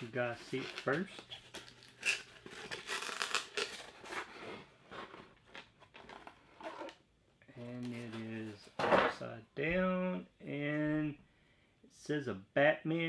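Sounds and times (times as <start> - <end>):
cardboard packaging rustling: 0.0 - 7.0, 7.6 - 9.0.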